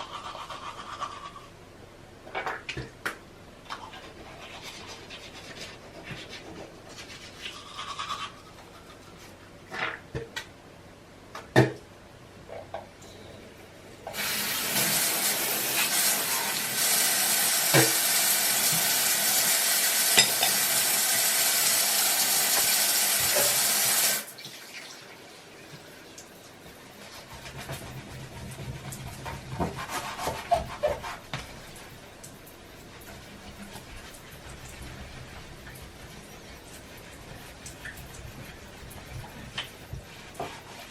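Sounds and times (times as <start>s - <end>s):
tap water running: 14.1s - 40.9s.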